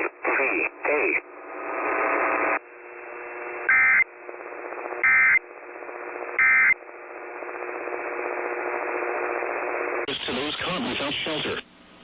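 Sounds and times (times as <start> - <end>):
faint steady hum: 0.0 - 12.0
radio hiss: 0.0 - 12.0.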